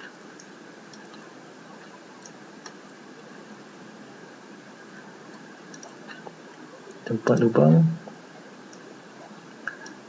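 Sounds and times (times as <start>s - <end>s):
microphone hiss: 0.0s - 10.0s
computer mouse clicks: 5.7s - 6.0s.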